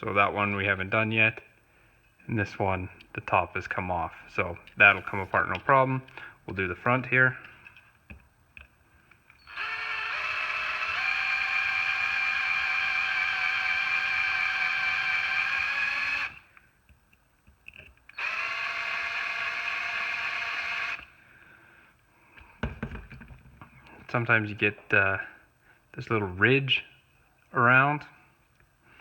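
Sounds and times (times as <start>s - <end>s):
electric drill whining: 9.4s - 16.6s, 18.1s - 21.2s.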